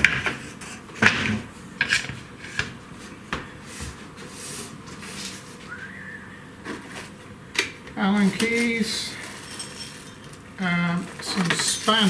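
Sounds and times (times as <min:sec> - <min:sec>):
packaging rustle: 0:08.2 - 0:10.4, 0:11.0 - 0:12.0.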